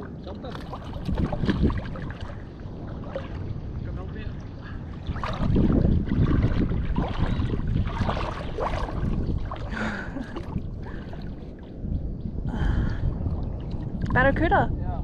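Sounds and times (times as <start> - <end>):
surf washing: 0.0 - 11.6
wind buffeting microphone: 0.0 - 15.0.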